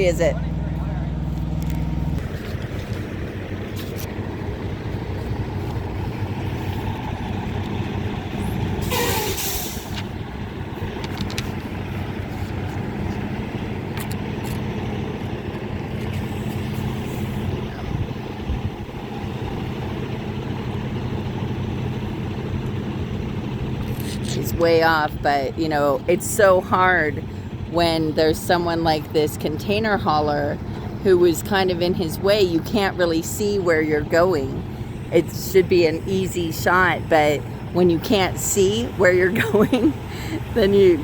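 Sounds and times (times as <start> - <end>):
diesel truck engine idling: 0.0 - 41.0
air brakes hiss: 8.8 - 10.0.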